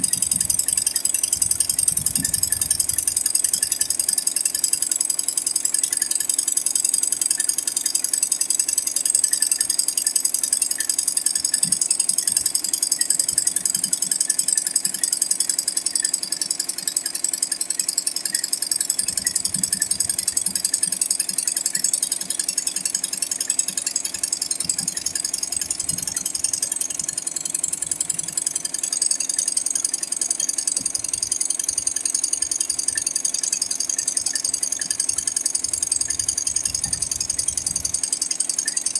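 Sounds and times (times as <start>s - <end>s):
embroidery machine rattling: 0.0s - 38.9s.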